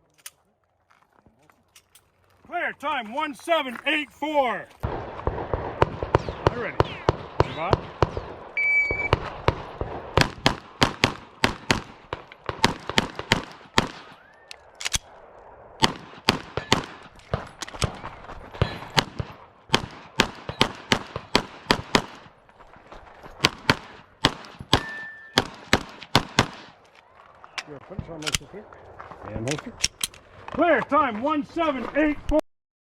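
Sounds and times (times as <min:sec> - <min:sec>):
pistol shots: 0:04.3 - 0:15.1, 0:15.8 - 0:22.4, 0:23.4 - 0:26.8
shot timer beep: 0:08.6 - 0:09.2.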